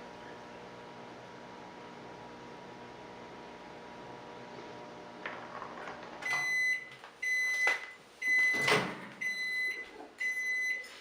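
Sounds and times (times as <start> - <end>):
microwave oven beeping: 5.1 - 11.0.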